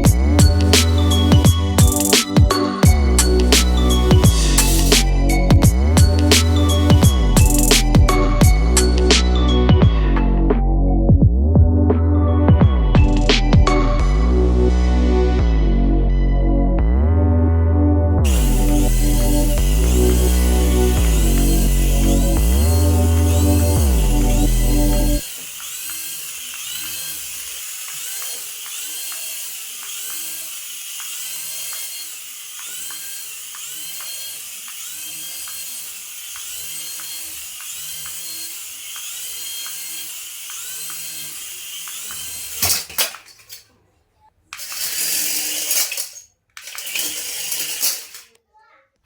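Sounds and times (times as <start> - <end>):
toy plane electric whirring: 0.0 - 9.3, 18.2 - 43.6, 44.5 - 48.4.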